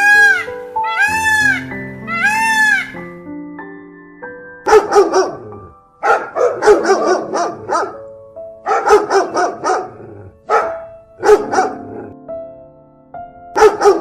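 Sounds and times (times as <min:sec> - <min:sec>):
background music: 0:00.0 - 0:14.0
dog barking: 0:04.7 - 0:08.0, 0:08.6 - 0:12.1, 0:13.6 - 0:14.0.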